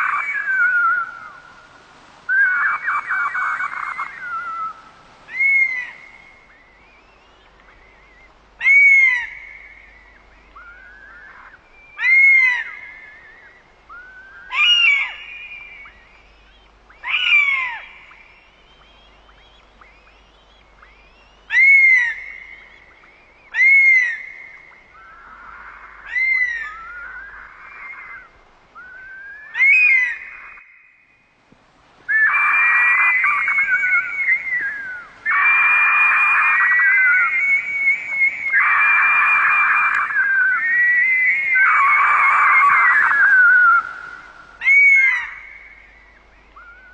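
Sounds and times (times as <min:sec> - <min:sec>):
bird of prey screaming: 0:00.0 - 0:01.4, 0:02.3 - 0:06.6, 0:08.1 - 0:09.7, 0:10.6 - 0:15.6, 0:17.0 - 0:17.9, 0:20.0 - 0:22.6, 0:23.4 - 0:24.4, 0:25.0 - 0:30.7, 0:32.1 - 0:46.9.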